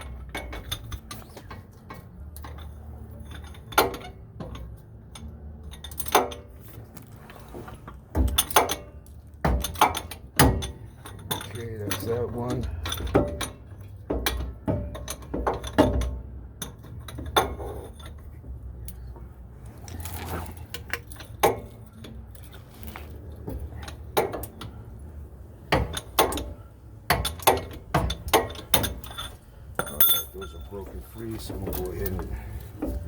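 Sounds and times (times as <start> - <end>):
metal hand tools clinking: 28.5 - 32.4.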